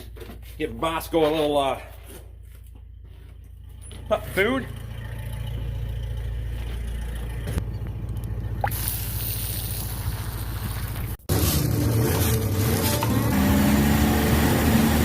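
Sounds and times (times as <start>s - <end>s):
steady sound with low hum: 2.2s - 11.2s
vehicle engine idling: 2.4s - 11.0s.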